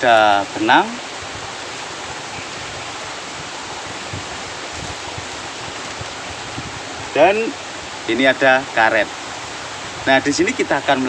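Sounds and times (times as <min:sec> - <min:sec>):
steady rushing outdoor noise: 0:00.0 - 0:11.0.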